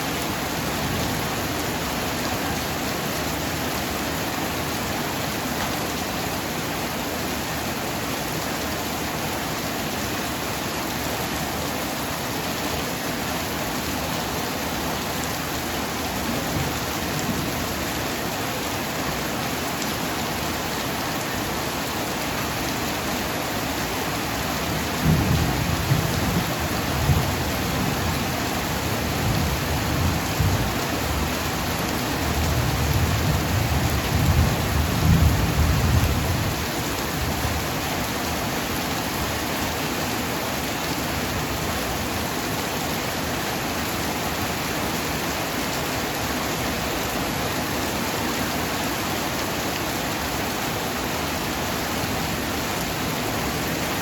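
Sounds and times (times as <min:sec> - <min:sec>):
heavy rain pouring: 0:00.0 - 0:54.0.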